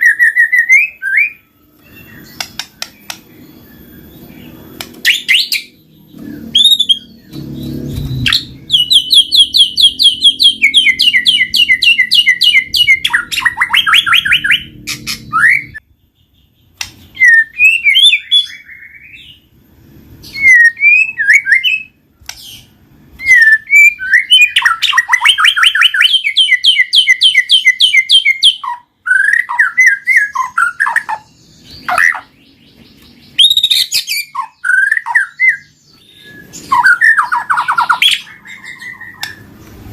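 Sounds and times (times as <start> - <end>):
bird whistled phrases: 20.2 - 21.9, 22.5 - 32.4, 33.4 - 39.4.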